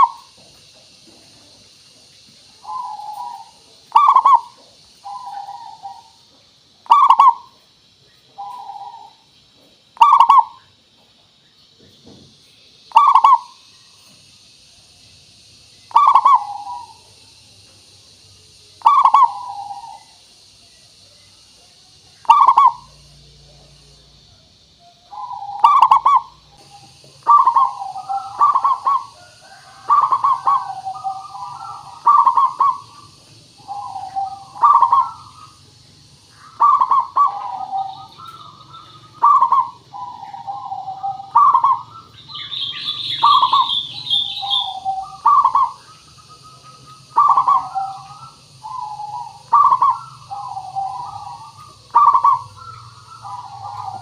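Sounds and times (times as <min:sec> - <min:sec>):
bird twittering: 0:00.0 - 0:00.7, 0:01.5 - 0:09.3, 0:10.0 - 0:10.8, 0:12.8 - 0:14.6, 0:15.2 - 0:17.4, 0:18.5 - 0:20.5, 0:22.1 - 0:23.1, 0:24.8 - 0:54.0
dove cooing: 0:00.0 - 0:07.6, 0:08.2 - 0:09.3, 0:10.0 - 0:10.7, 0:12.9 - 0:13.7, 0:15.9 - 0:17.2, 0:18.8 - 0:20.2, 0:22.2 - 0:23.1, 0:25.1 - 0:54.0.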